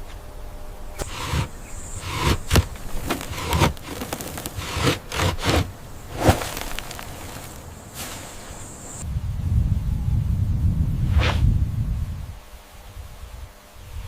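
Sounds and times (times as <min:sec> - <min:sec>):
scrapes and rustles: 0:01.0 - 0:09.0.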